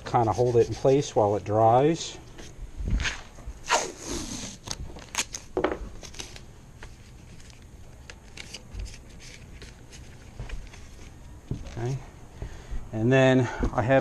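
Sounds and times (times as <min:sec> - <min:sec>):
tape ripping off roll: 0:03.0 - 0:06.4.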